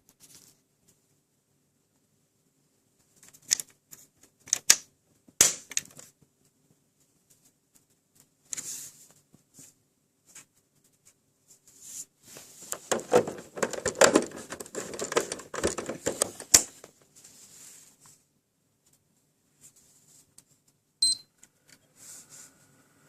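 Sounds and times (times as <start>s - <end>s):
game console rattling: 12.8s - 16.8s.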